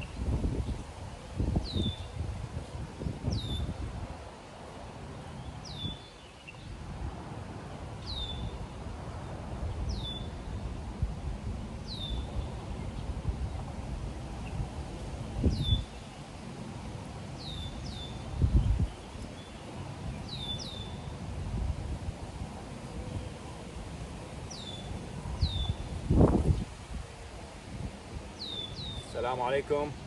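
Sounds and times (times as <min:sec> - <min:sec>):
wind rumble on microphone: 0:00.0 - 0:30.0
bird calling: 0:20.3 - 0:21.1, 0:28.4 - 0:29.2.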